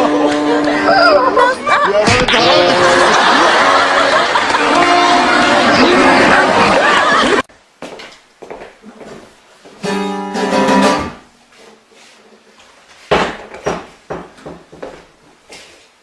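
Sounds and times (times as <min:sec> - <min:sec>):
guitar-like plucked strings: 0:03.9 - 0:06.6, 0:09.8 - 0:11.2.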